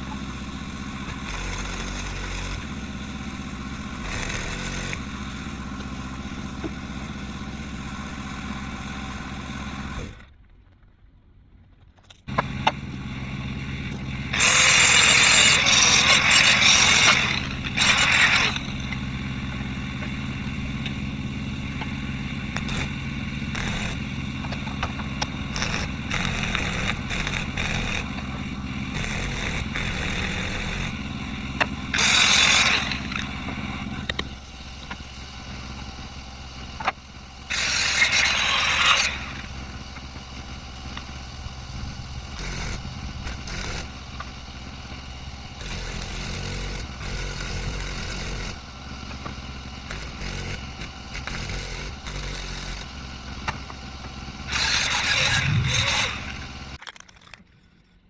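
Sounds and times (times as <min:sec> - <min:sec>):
small engine running: 0:00.0 - 0:10.4, 0:12.2 - 0:58.0
loud bursts of hissing: 0:54.2 - 0:56.7.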